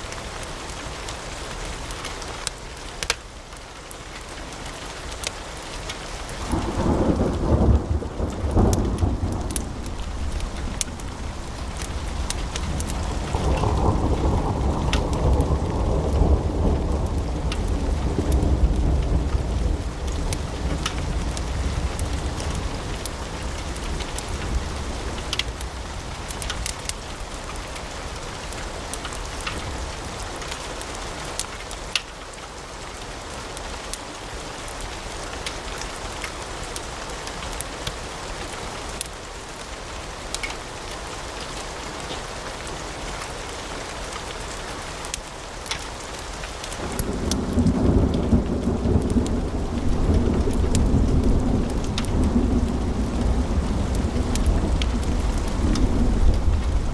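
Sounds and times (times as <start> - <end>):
wood fire crackling: 0.0 - 56.9
roar of flames: 7.8 - 28.0, 46.7 - 56.9.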